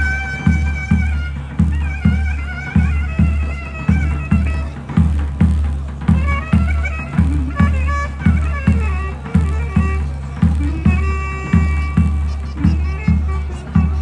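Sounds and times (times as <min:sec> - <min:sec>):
deep davul beat: 0:00.0 - 0:14.0
shrill zurna melody: 0:00.0 - 0:14.0.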